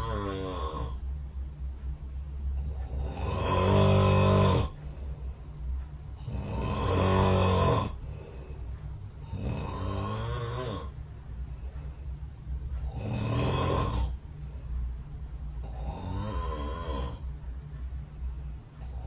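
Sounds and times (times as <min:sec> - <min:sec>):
person snoring: 0:00.0 - 0:01.0, 0:02.6 - 0:04.8, 0:06.2 - 0:08.3, 0:09.2 - 0:11.0, 0:12.8 - 0:14.2, 0:15.6 - 0:17.2.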